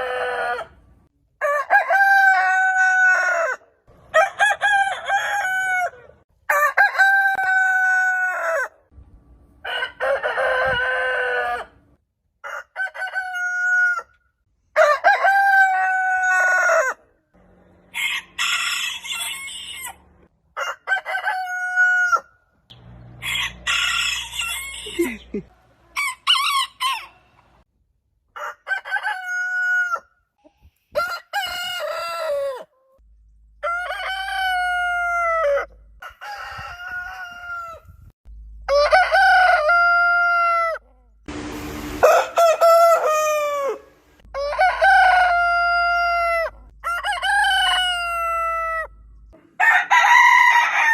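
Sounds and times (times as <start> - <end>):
roosters crowing: 0.0 - 8.8, 9.6 - 14.1, 14.8 - 17.1, 17.8 - 22.3, 23.0 - 25.4, 28.4 - 30.1, 30.9 - 32.7, 33.6 - 37.9, 38.6 - 48.9, 49.6 - 50.9.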